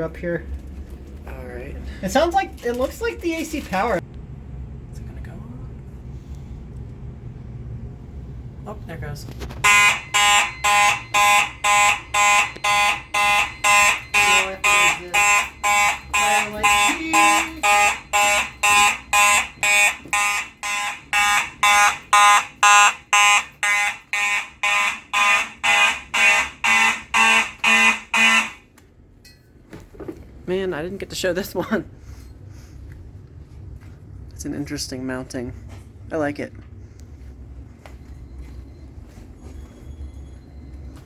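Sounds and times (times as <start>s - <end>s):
fire alarm pulsing: 9.4s - 28.7s.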